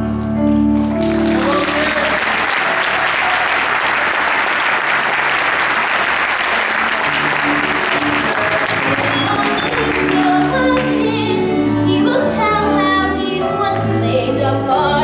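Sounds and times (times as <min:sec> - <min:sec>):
soft musical accompaniment: 0:00.0 - 0:04.6, 0:06.2 - 0:15.0
audience applauding: 0:00.6 - 0:11.8.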